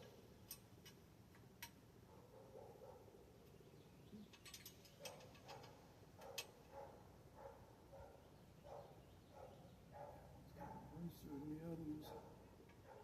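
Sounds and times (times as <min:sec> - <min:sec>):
clicks of metal bicycle parts: 0:00.0 - 0:01.8, 0:04.2 - 0:06.6.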